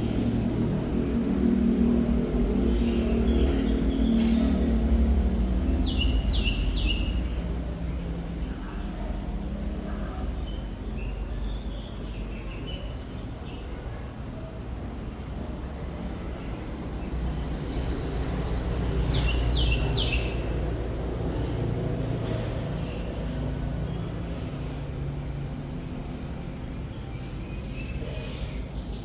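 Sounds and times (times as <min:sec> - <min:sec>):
bird singing: 0:01.3 - 0:07.5, 0:16.7 - 0:20.5.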